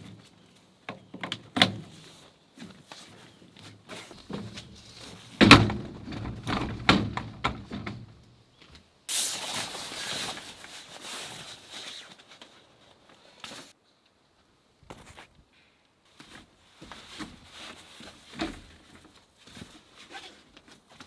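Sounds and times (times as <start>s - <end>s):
camping gear knocks and thuds: 0.9s - 2.0s, 2.6s - 8.2s, 16.2s - 21.0s
rustling hiss: 9.1s - 13.8s.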